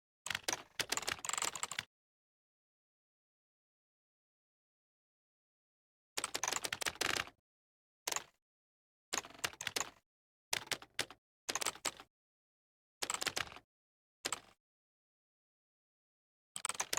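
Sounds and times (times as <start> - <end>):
computer keyboard typing: 0.3 - 1.9, 6.2 - 7.3, 9.2 - 10.0, 10.6 - 12.1, 13.0 - 13.6, 16.6 - 16.9.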